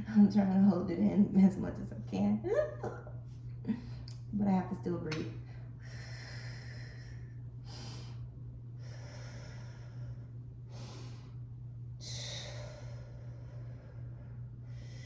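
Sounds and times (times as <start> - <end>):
low electrical hum: 0.0 - 15.0
woman breathing: 5.4 - 15.0.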